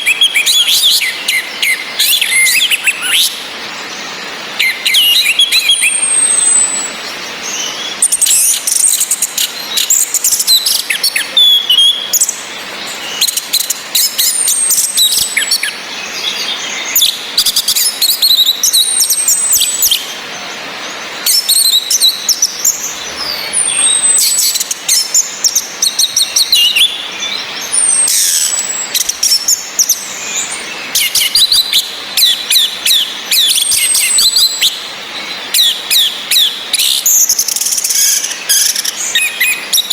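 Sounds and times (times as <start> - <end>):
birds chirping song: 0.0 - 39.9
rain hiss: 0.0 - 39.9
high falling bird whistle: 21.3 - 34.8.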